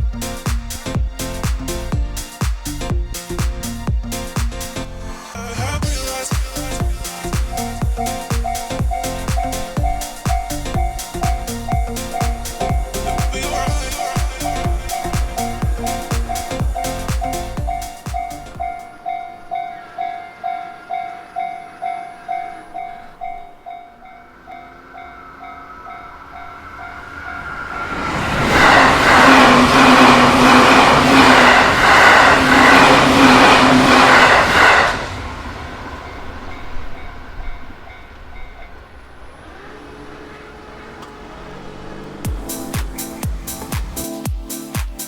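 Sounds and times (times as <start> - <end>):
electric train passing: 0.0 - 44.2
level crossing warning bell: 5.9 - 27.5.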